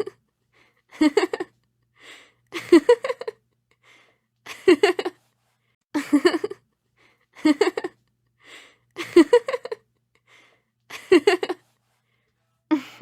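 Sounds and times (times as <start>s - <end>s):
young woman giggling: 2.6s - 3.4s, 4.5s - 5.2s, 6.0s - 6.7s, 7.4s - 8.2s, 9.0s - 10.2s, 10.9s - 11.6s.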